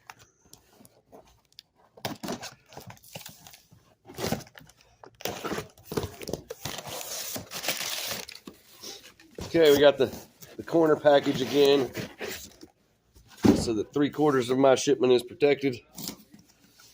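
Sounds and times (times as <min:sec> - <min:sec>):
cardboard box tearing and crinkling: 0:05.2 - 0:08.4.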